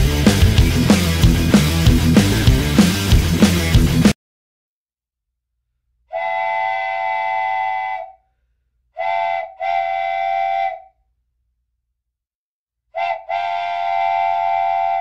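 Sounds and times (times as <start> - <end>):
train whistle blasts: 6.1 - 8.2, 9.0 - 10.9, 13.0 - 15.0.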